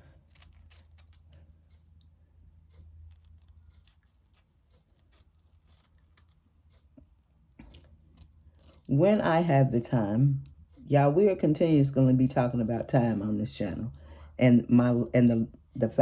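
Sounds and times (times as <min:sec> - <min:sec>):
hands handling hair and tools: 0:00.0 - 0:01.8, 0:02.6 - 0:08.9
room hum: 0:00.0 - 0:16.0.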